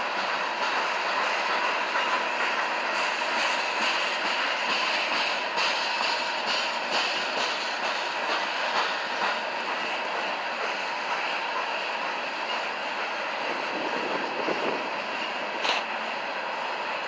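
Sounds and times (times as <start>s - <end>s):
train cars rolling past: 0.0s - 17.0s
wheels clicking over rail joints: 15.6s - 15.9s.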